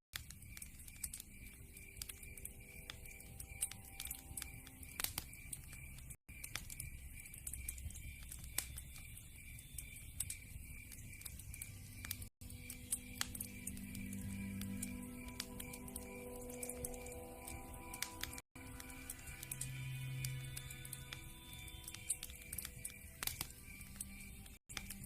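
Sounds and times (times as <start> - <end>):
wood fire crackling: 0.2 - 25.0.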